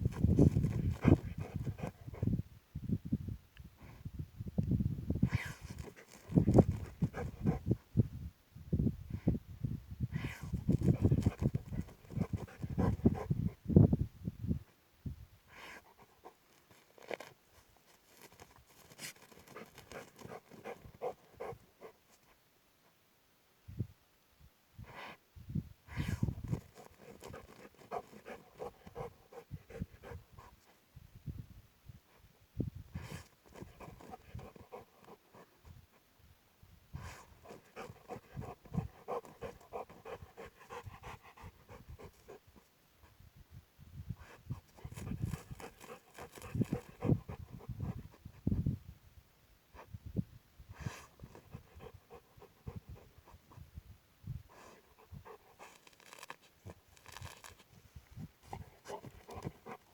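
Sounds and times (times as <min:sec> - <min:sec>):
dog panting: 0:00.1 - 0:02.3, 0:05.7 - 0:07.7, 0:10.6 - 0:13.3, 0:18.3 - 0:22.0, 0:26.2 - 0:30.5, 0:33.0 - 0:35.6, 0:37.1 - 0:42.4, 0:44.8 - 0:48.2, 0:51.1 - 0:53.6, 0:58.4 - 0:59.9
dog paws scratching: 0:16.5 - 0:21.6, 0:55.6 - 0:57.7.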